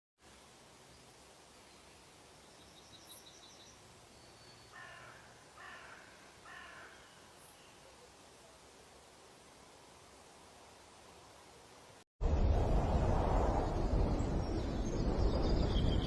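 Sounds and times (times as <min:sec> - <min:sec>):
steady hiss: 0:00.2 - 0:14.4.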